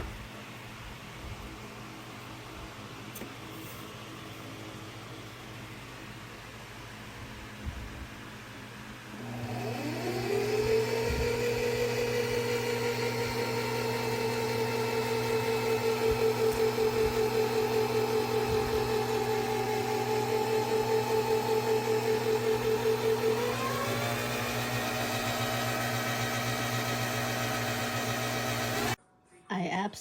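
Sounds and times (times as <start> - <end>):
sewing machine motor whining: 9.2 - 29.0.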